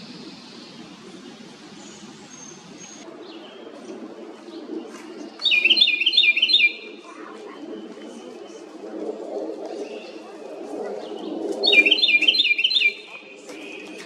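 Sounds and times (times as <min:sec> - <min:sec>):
wren calling: 0:05.4 - 0:07.3, 0:11.2 - 0:13.8.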